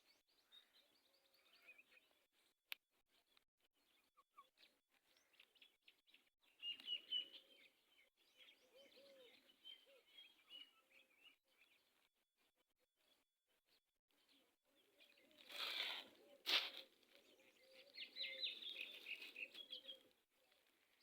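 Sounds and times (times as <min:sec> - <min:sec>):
birds chirping: 0:03.1 - 0:21.0
soft low bird calls: 0:03.3 - 0:11.9, 0:14.2 - 0:21.0.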